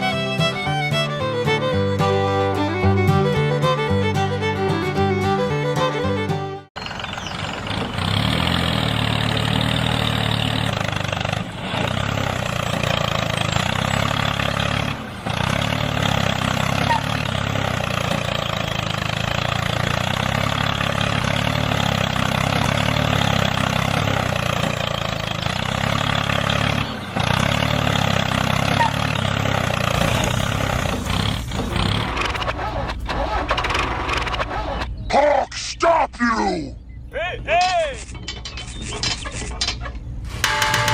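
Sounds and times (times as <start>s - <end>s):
small engine running: 6.8s - 35.0s.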